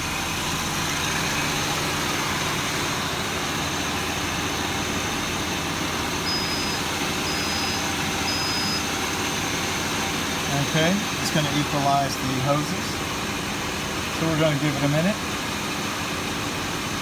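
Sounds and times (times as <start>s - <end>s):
car engine idling with blower: 0.0s - 17.0s
short high beeps: 6.2s - 8.9s.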